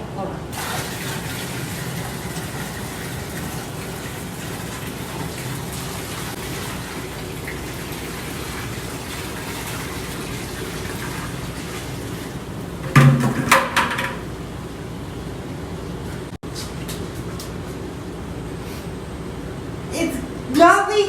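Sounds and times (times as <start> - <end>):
water rushing through pipe: 0.5 - 13.4
pump motor hum: 0.5 - 15.2.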